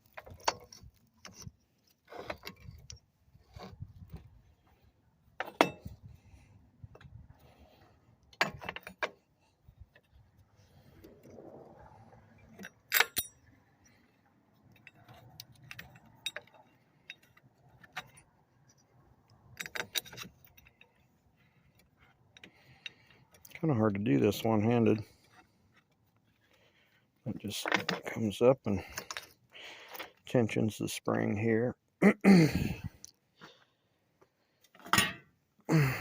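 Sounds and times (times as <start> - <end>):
metal chain parts clanking: 12.5 - 14.0, 14.6 - 18.3, 19.5 - 20.9.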